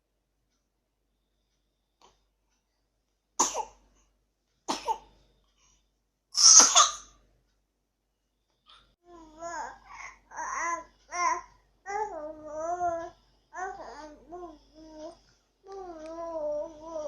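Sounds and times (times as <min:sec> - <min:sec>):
child coughing: 0:04.7 - 0:05.0, 0:06.4 - 0:07.0.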